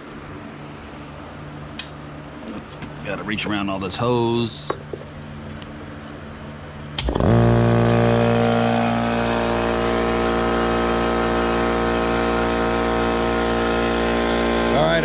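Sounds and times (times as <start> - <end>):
air compressor running: 6.9 - 15.0.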